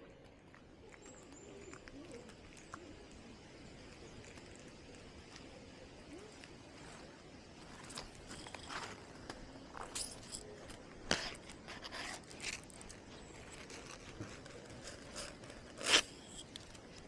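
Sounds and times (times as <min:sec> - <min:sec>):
crunching and rustling: 0:00.0 - 0:17.0
sharp clicks and scrapes: 0:07.8 - 0:17.0.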